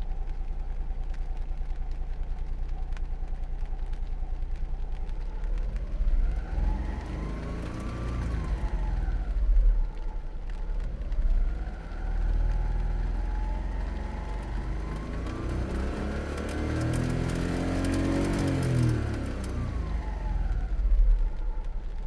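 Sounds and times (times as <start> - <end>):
rain on a soft top: 0.0 - 22.0
car engine revving: 11.2 - 20.4.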